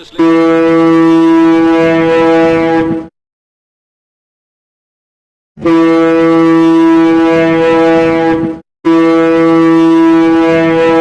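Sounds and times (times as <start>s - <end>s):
ship's horn blasts: 0.0s - 3.1s, 5.6s - 11.0s.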